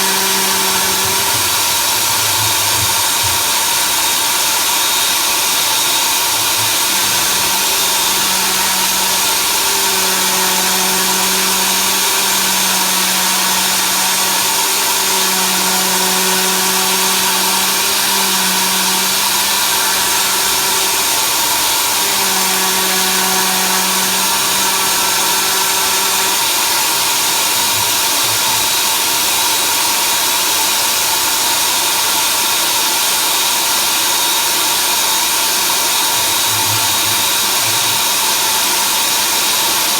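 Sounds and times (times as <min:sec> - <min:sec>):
stepper motors humming: 0:00.0 - 0:28.5
machine whirring: 0:00.0 - 0:29.8.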